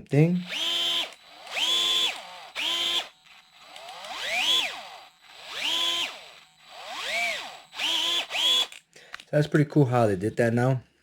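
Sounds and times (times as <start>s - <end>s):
cordless screwdriver whirring: 0.4s - 8.8s.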